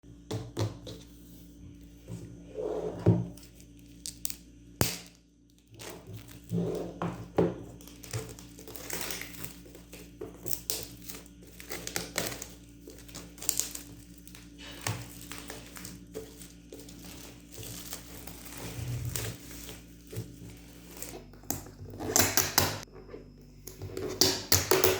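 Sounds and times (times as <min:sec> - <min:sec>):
wrapper crinkling and rustling: 0:05.4 - 0:06.6, 0:07.2 - 0:22.4.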